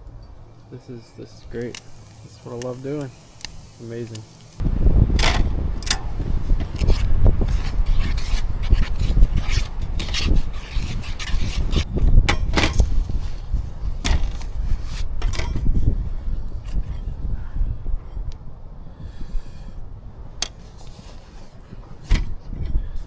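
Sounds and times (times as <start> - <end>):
steady rumble: 0.0 - 23.0
wind buffeting microphone: 1.5 - 23.0
clicks knocks and scrapes: 5.2 - 12.9, 22.0 - 22.8.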